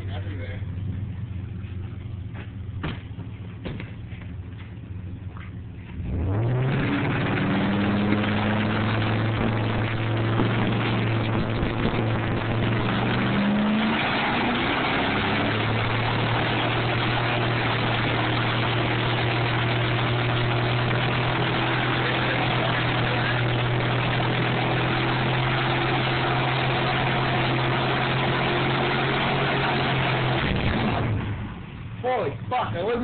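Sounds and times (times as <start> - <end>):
car engine revving: 0.0 - 33.0.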